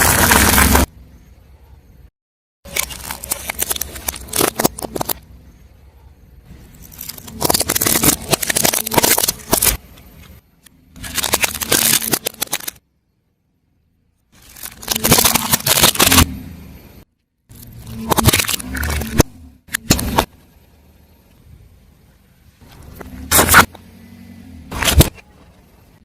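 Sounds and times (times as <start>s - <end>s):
tyre crushing brittle objects: 0.0s - 0.9s, 2.7s - 5.2s, 6.6s - 12.8s, 14.4s - 16.3s, 17.5s - 20.3s, 22.8s - 23.8s, 24.7s - 25.2s.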